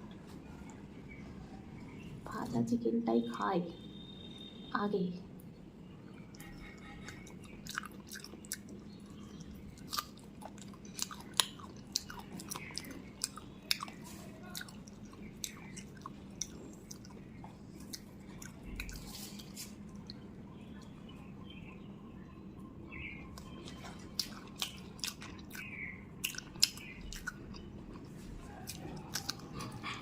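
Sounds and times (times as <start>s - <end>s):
chewing crisp fried chicken: 6.0s - 21.2s, 23.2s - 30.0s
wet mouth clicks: 23.4s - 27.7s, 28.7s - 29.9s.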